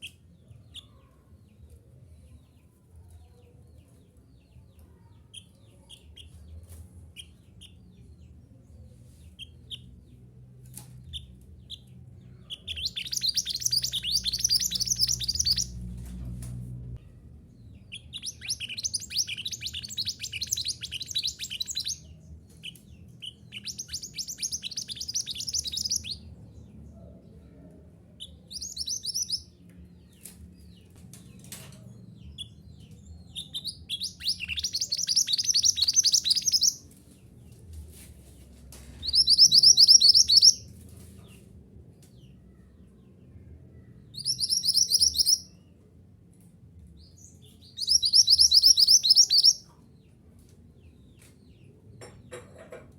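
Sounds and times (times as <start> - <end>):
faint low hum: 0.0 - 52.9
bird twittering song: 10.8 - 16.2, 17.5 - 27.2, 28.2 - 37.5, 39.0 - 40.7, 42.0 - 45.8, 47.0 - 50.1
single bird chirps: 12.5 - 15.7, 33.4 - 36.8, 39.0 - 40.6, 44.2 - 45.4, 47.7 - 49.7.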